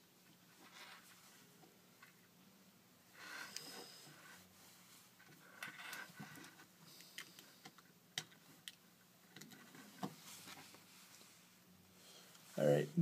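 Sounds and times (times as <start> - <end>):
soft rustling: 0.4 - 2.3, 3.2 - 6.8, 9.6 - 12.8.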